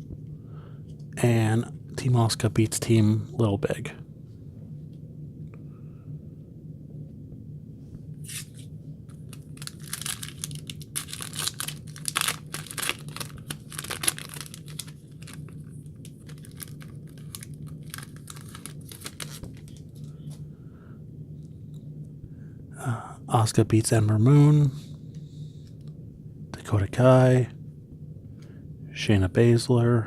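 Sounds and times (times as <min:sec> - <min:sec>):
wrapper tearing and crinkling: 0:08.2 - 0:20.0.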